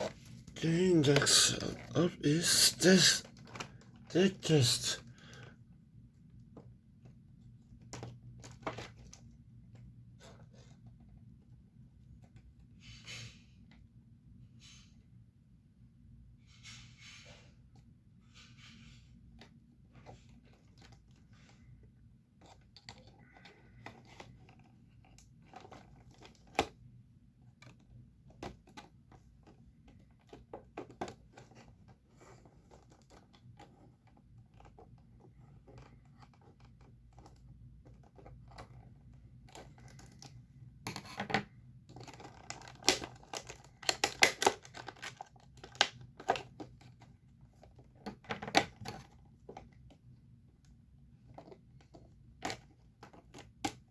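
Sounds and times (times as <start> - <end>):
packaging scratching and clicking: 41.9 - 47.9.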